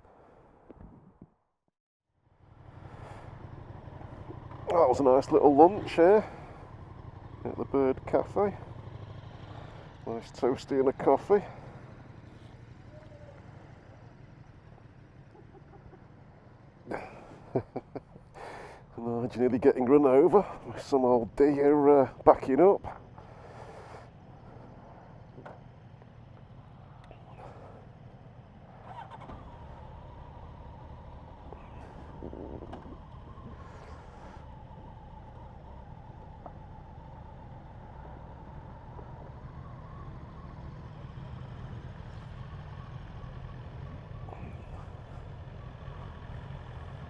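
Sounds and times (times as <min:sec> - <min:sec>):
low steady rumble: 0:02.2 - 0:47.0
faint animal calls: 0:12.8 - 0:13.8, 0:28.7 - 0:30.0, 0:31.4 - 0:35.3.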